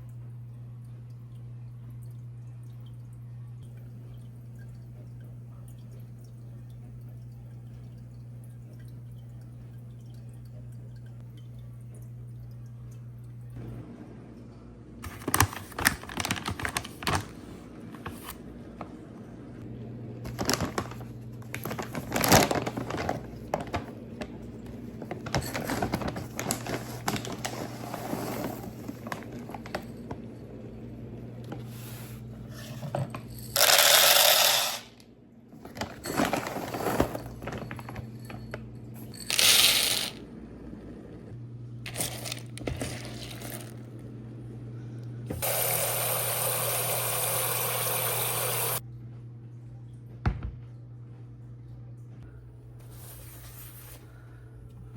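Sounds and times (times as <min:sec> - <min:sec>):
household objects clinking and knocking: 0:25.1 - 0:30.2, 0:32.6 - 0:34.9, 0:35.6 - 0:40.2.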